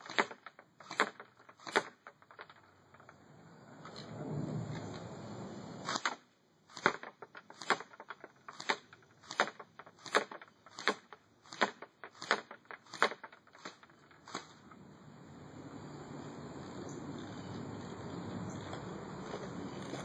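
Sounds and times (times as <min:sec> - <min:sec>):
airsoft gun shots: 0:00.0 - 0:02.1, 0:05.8 - 0:14.6.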